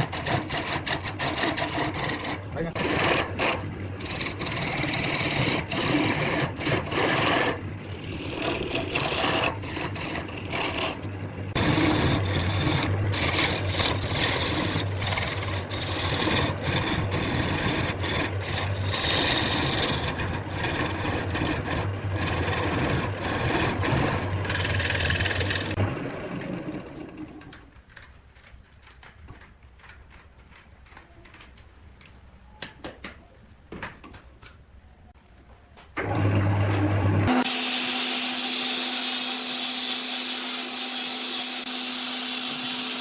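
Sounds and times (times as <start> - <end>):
tool rasping on spinning wood: 0.0 - 25.8
wood lathe motor hum: 0.0 - 27.5, 36.0 - 43.0.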